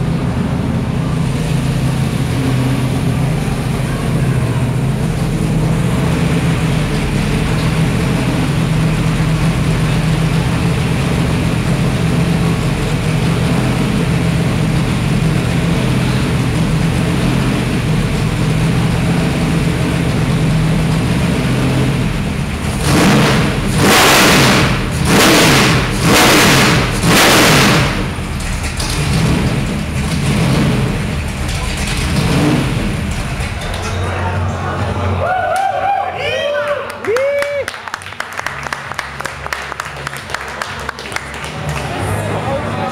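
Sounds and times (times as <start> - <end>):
race car engine idling and revving: 0.0 - 35.7, 37.2 - 42.9.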